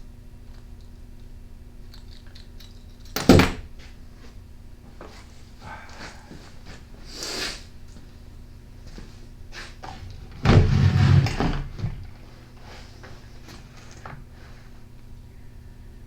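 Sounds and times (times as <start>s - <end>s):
loud clattering rustle: 9.9s - 12.3s.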